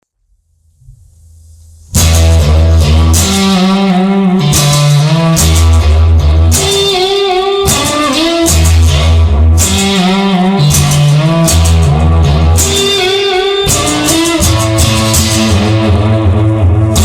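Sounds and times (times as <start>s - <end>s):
bass line: 0.6s - 17.0s
blues guitar bending notes: 1.8s - 17.0s
steady drum beat: 7.7s - 17.0s.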